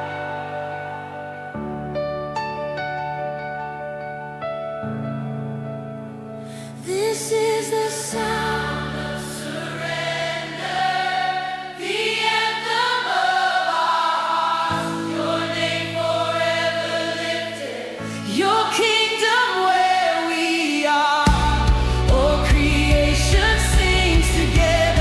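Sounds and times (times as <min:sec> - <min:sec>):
choir singing long notes: 0:06.9 - 0:25.0.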